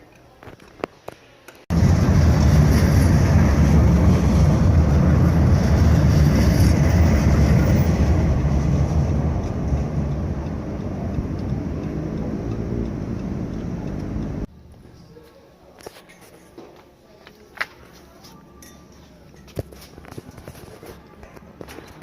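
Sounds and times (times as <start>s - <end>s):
tram rumbling: 1.7s - 14.5s.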